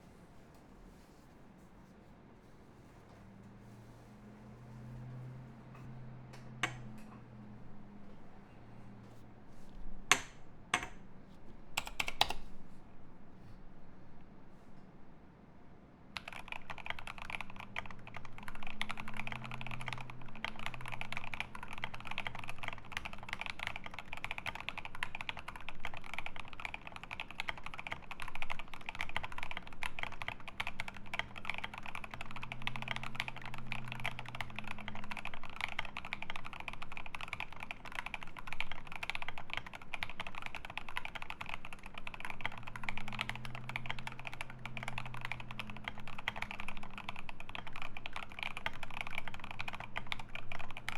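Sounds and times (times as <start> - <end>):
fast mechanical keyboard typing: 11.8 - 12.5, 16.2 - 50.9.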